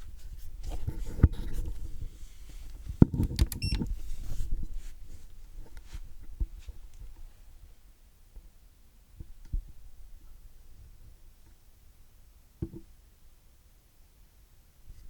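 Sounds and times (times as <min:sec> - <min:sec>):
handling clicks and knocks: 0:03.0 - 0:04.0.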